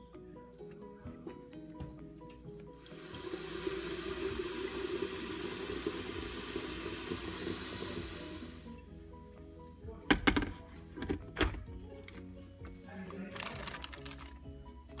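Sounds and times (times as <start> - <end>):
faint background music: 0.0 - 15.0
running water rushing: 2.8 - 8.8.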